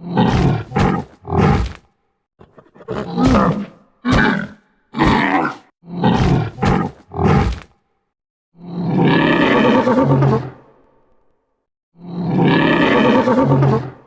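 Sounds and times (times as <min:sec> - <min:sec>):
creature calls: 0:02.4 - 0:07.6
long bellowing creature call: 0:08.6 - 0:10.6, 0:12.0 - 0:14.0.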